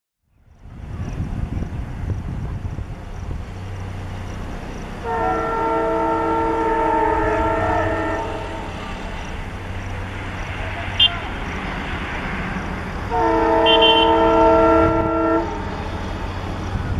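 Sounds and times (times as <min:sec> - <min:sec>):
locomotive engine rumble: 0:00.4 - 0:16.9
locomotive horn blast: 0:05.0 - 0:09.1, 0:10.8 - 0:11.4, 0:13.1 - 0:15.9.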